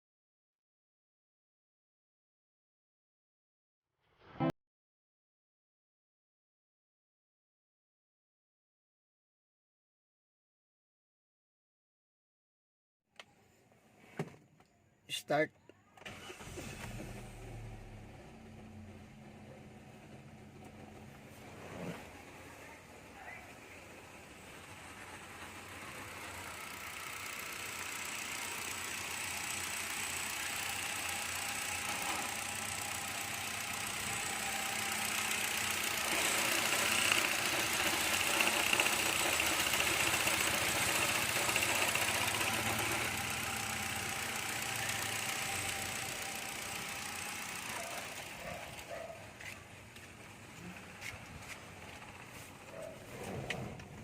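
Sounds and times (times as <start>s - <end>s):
vehicle engine running: 16.2s - 54.0s.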